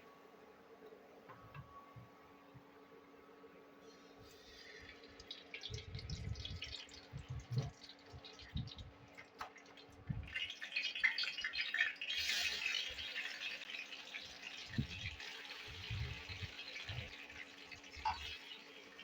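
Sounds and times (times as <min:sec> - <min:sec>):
water running from tap: 0:04.7 - 0:19.0.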